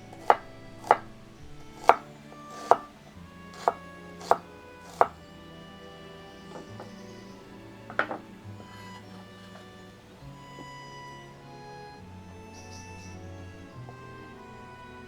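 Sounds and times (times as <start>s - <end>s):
knife chopping on cutting board: 0.2s - 1.1s, 1.7s - 2.9s, 3.5s - 5.2s, 6.5s - 7.0s, 7.9s - 8.3s.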